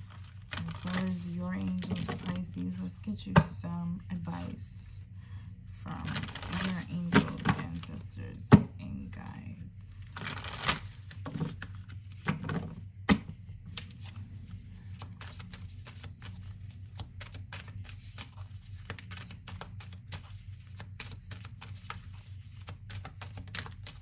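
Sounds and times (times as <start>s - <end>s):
cards being shuffled: 0.0s - 2.5s, 5.8s - 7.6s, 10.2s - 24.0s.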